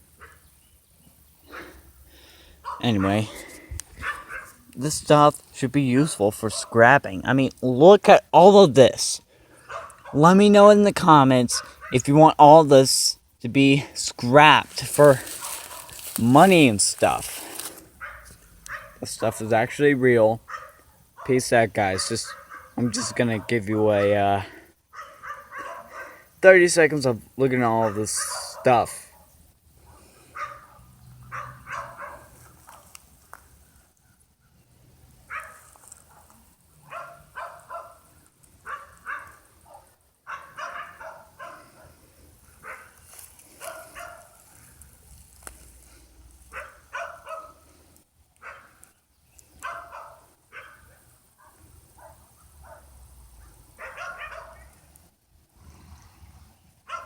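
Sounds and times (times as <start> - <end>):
dog barking: 2.6 - 3.2, 4.0 - 4.6, 6.5 - 6.8, 9.7 - 10.2, 11.6 - 12.0, 15.4 - 16.0, 18.0 - 19.5, 20.4 - 21.4, 22.0 - 24.2, 24.9 - 26.3, 27.8 - 32.9, 35.3 - 41.9, 42.6 - 43.0, 43.6 - 44.6, 46.5 - 47.6, 48.4 - 48.8, 49.6 - 54.8.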